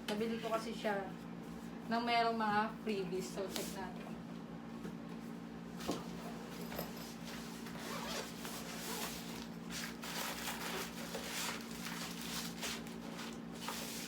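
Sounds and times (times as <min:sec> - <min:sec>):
rustling and handling noise: 0:05.1 - 0:14.0
zipper being pulled open: 0:07.6 - 0:11.7.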